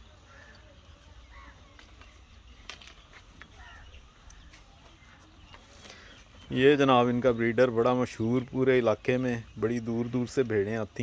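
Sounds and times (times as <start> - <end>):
crows cawing faintly: 0.1 - 2.1, 3.1 - 6.3.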